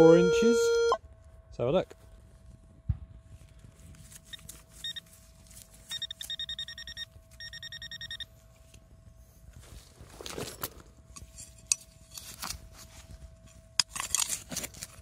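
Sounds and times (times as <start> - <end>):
pinpointer probe beeping: 0.0 - 1.0, 4.3 - 5.0, 5.9 - 8.3.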